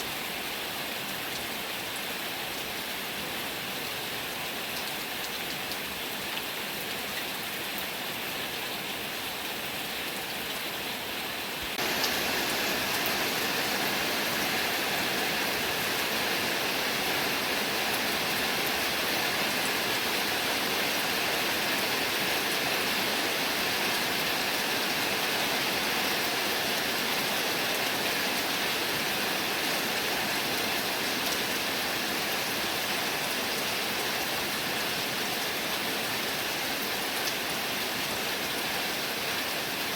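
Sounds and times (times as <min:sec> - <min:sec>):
heavy rain hissing: 0:11.0 - 0:39.9.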